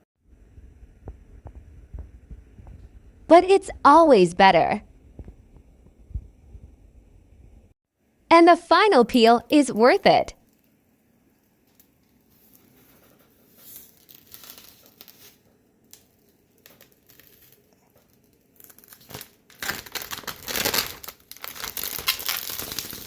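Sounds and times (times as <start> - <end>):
plastic film crinkling and tearing: 12.2 - 23.0.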